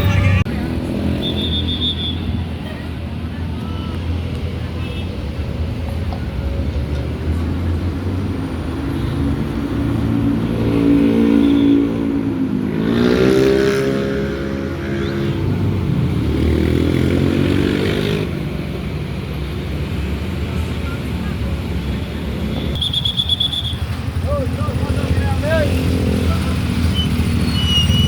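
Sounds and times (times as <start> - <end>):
bus multi-tone horn: 0.0 - 0.5
bus engine rumble: 2.2 - 10.2, 18.3 - 22.8.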